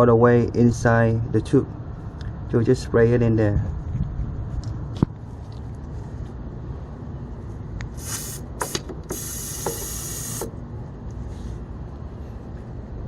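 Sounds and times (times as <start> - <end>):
aerosol can spraying: 8.0 - 10.5.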